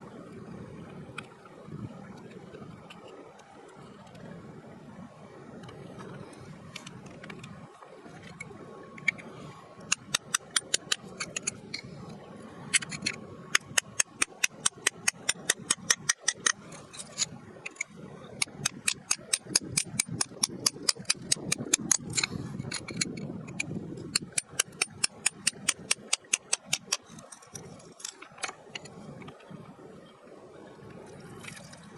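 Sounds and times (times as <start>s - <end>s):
hand tool tapping rock: 18.4s - 27.1s.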